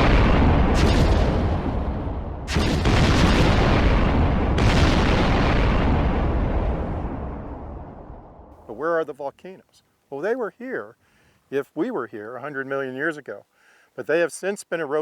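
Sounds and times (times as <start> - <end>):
volcanic eruption blast: 0.0 - 8.5.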